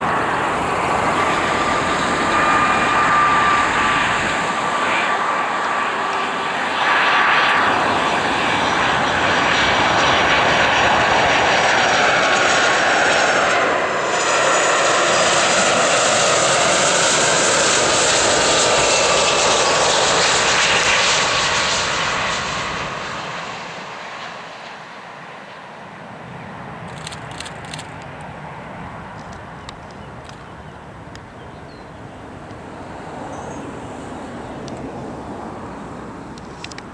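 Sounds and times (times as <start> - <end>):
jet engine rumble and whine: 0.0 - 36.9.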